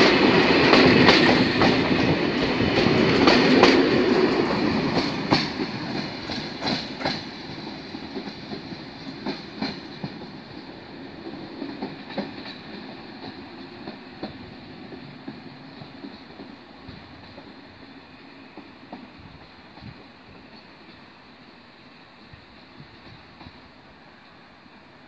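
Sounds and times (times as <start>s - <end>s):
train wheels clicking over rail joints: 0.0s - 21.1s, 22.2s - 23.8s
passenger train rolling past: 0.0s - 25.0s.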